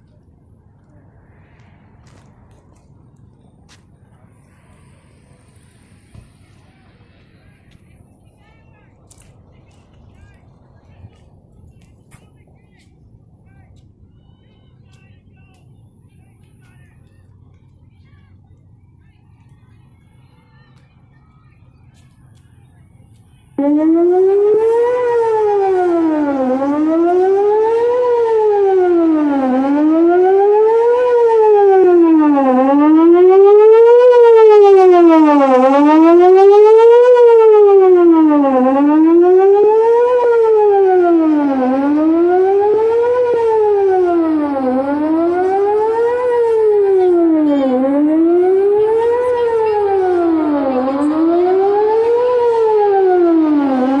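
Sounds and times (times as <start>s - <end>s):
tornado siren wailing: 0.0s - 11.9s, 19.0s - 54.0s.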